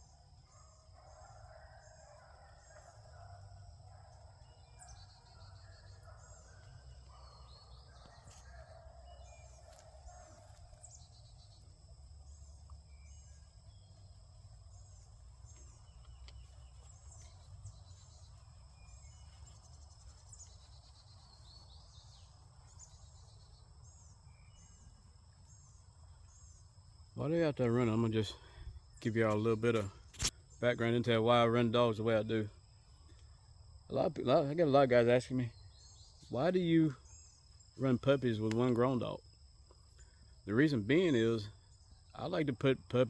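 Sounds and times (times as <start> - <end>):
distant dogs barking: 0.0 - 11.0.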